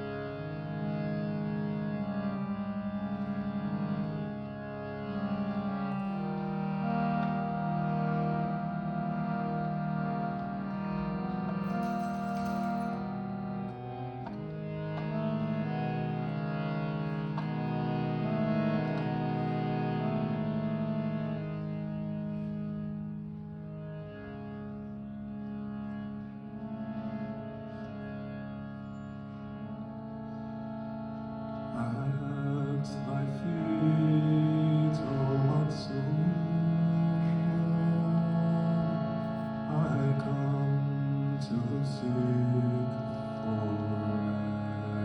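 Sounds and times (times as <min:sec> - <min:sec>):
steady drone: 0:16.9 - 0:45.0.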